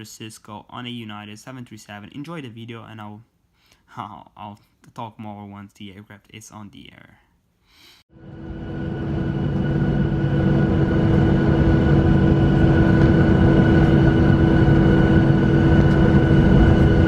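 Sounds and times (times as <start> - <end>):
jet engines spooling up: 8.2 - 17.0.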